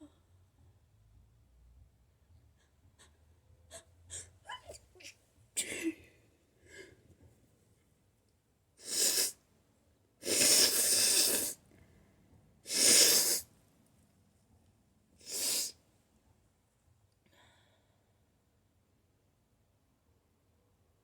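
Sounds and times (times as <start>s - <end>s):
person sneezing: 8.8s - 9.3s, 10.2s - 11.6s, 12.7s - 13.4s, 15.2s - 15.7s.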